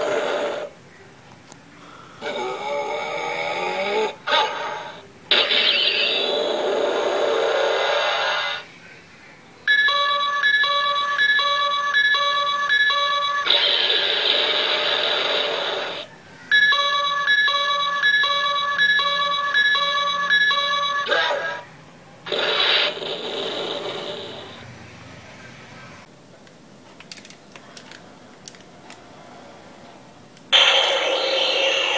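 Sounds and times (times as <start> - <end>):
electronic beep repeating: 16.5 - 21.1
toy harsh hissing noise: 30.6 - 31.9.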